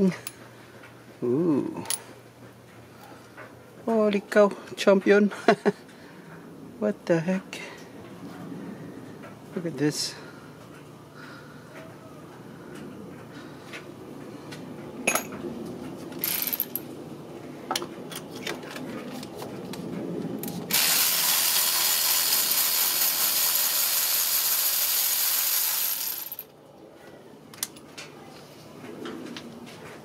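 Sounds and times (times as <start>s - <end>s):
loud steady hiss: 20.6s - 26.4s.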